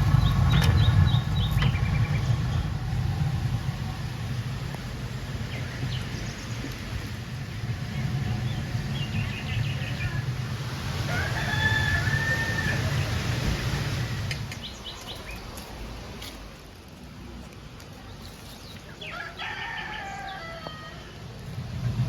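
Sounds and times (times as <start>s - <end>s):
rooster crowing: 11.0s - 13.4s, 19.0s - 21.2s.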